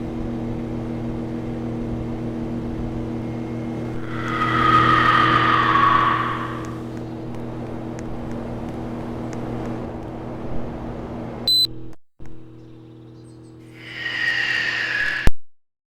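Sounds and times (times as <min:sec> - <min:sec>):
airflow hiss: 0:03.9 - 0:07.0, 0:13.8 - 0:15.3.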